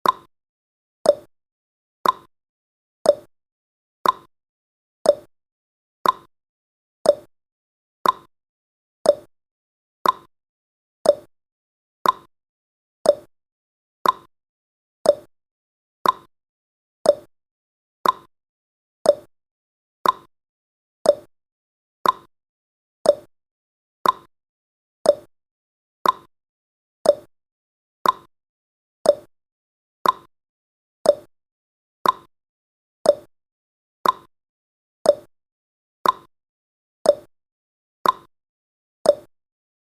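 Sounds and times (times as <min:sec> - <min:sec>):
clock ticking: 0:02.0 - 0:02.3, 0:04.0 - 0:04.3, 0:06.0 - 0:06.3, 0:08.0 - 0:08.3, 0:10.0 - 0:10.3, 0:12.0 - 0:12.3, 0:14.0 - 0:14.3, 0:15.1 - 0:15.3, 0:16.0 - 0:16.3, 0:18.0 - 0:18.3, 0:20.0 - 0:20.3, 0:22.0 - 0:22.3, 0:24.0 - 0:24.3, 0:25.1 - 0:25.3, 0:26.0 - 0:26.3, 0:27.1 - 0:27.3, 0:28.0 - 0:28.3, 0:29.1 - 0:29.3, 0:30.0 - 0:30.3, 0:32.0 - 0:32.3, 0:33.1 - 0:33.3, 0:34.0 - 0:34.3, 0:36.0 - 0:36.3, 0:38.0 - 0:38.3.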